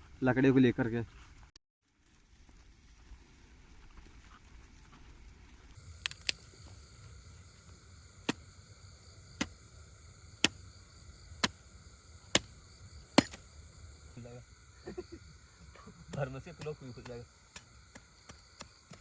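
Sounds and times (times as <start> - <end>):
crickets and insects chirring: 5.8 - 19.0.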